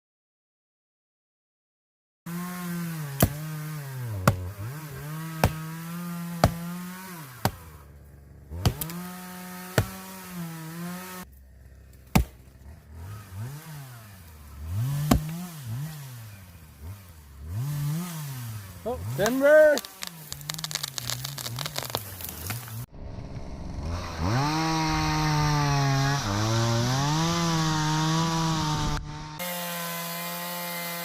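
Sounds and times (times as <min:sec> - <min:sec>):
axe chops: 0:02.3 - 0:07.8, 0:08.5 - 0:11.2, 0:12.0 - 0:17.0, 0:19.1 - 0:22.8
chainsaw running: 0:02.3 - 0:31.0.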